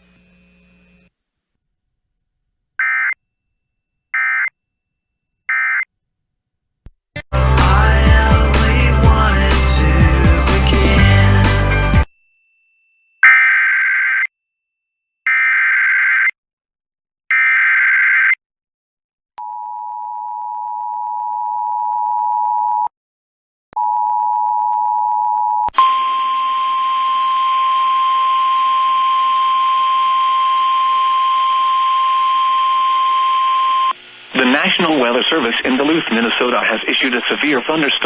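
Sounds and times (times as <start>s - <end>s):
two-tone attention signal: 25.8s - 33.9s
single-pitch warning alarm tone: 25.8s - 34.0s
radio hiss: 34.3s - 38.0s.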